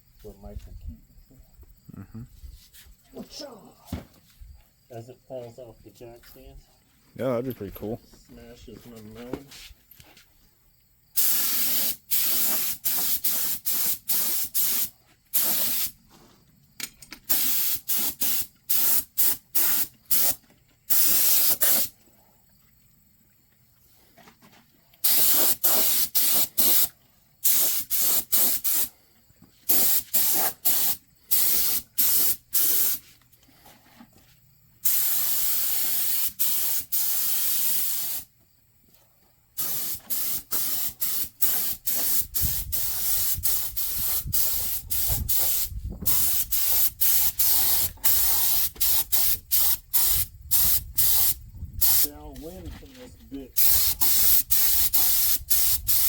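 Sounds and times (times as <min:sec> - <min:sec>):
spray gun hissing: 0:11.2 - 0:15.9, 0:17.3 - 0:21.9, 0:25.0 - 0:28.9, 0:29.7 - 0:33.0, 0:34.8 - 0:38.3, 0:39.6 - 0:52.1, 0:53.6 - 0:56.0.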